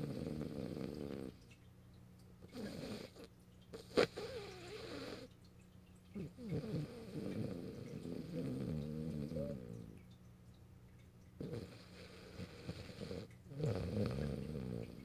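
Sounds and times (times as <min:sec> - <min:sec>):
dog snoring: 0:00.0 - 0:01.4, 0:02.5 - 0:05.3, 0:06.2 - 0:10.0, 0:11.4 - 0:15.0.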